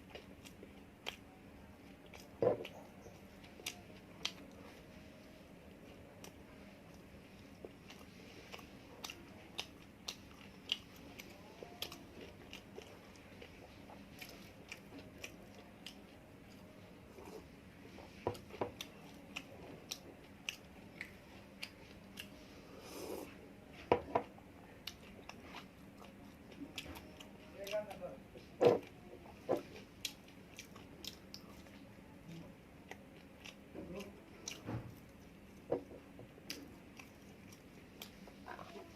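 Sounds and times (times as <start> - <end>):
person chewing crunchy food: 6.2 - 23.4, 24.1 - 31.8, 32.8 - 38.9.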